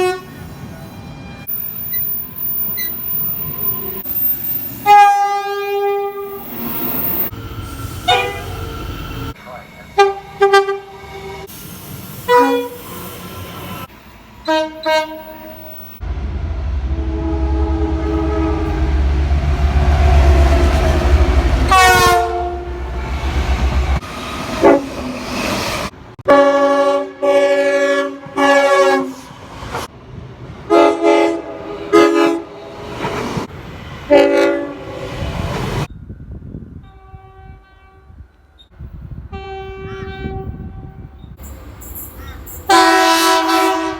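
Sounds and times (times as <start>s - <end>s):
locomotive air horn blasts: 0.0s - 0.4s, 4.8s - 6.4s, 8.0s - 8.9s, 10.0s - 11.5s, 12.2s - 12.9s, 14.4s - 24.0s, 24.6s - 24.9s, 26.2s - 29.3s, 30.7s - 32.6s, 34.1s - 34.9s, 36.8s - 38.2s, 39.3s - 41.1s, 42.7s - 43.9s
distant train horn: 0.0s - 1.6s, 4.8s - 6.5s, 7.2s - 11.5s, 12.3s - 12.9s, 14.4s - 25.1s, 26.2s - 29.3s, 30.7s - 32.6s, 34.1s - 34.9s, 36.8s - 38.2s, 39.3s - 41.1s, 42.7s - 43.9s
train passing with low rumble: 0.0s - 43.9s.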